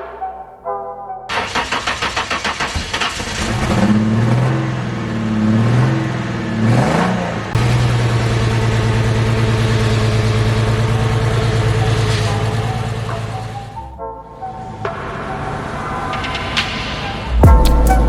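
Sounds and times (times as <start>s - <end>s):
car engine running steadily: 1.3s - 14.0s
car engine revving: 1.3s - 18.0s.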